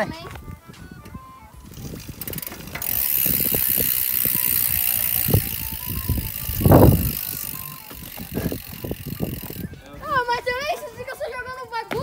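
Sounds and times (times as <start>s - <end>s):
bike freewheel hub clicking: 1.6s - 9.7s
rear wheel spinning buzz: 1.6s - 9.7s
bike knocks and rattles: 1.7s - 9.6s.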